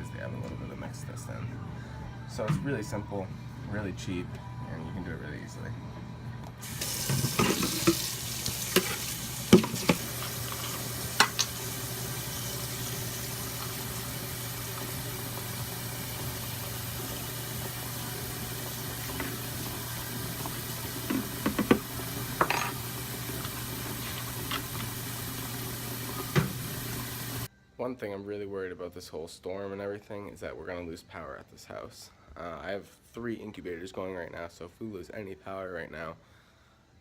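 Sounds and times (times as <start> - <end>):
water running from a tap: 6.6 - 27.5.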